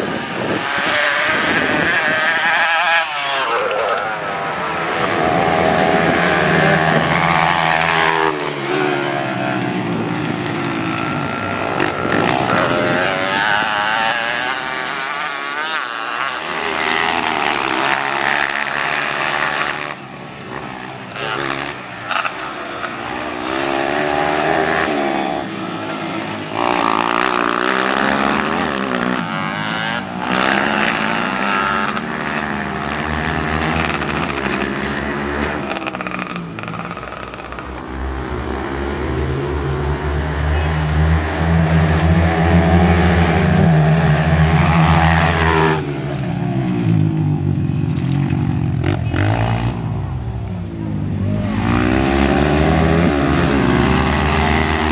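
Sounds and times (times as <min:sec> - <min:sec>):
dirt bike engine revving: 0:00.0 - 0:50.0, 0:51.0 - 0:54.9.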